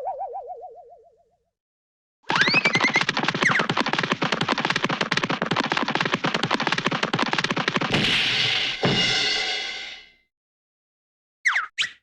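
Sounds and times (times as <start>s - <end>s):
cartoon rapid foot taps: 2.3s - 9.1s
sharp hit with ringing: 7.9s - 10.1s.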